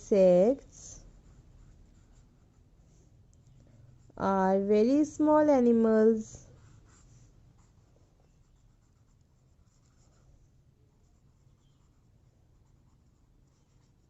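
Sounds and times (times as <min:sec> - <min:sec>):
handwriting scratching: 0:00.9 - 0:02.7, 0:06.4 - 0:14.0.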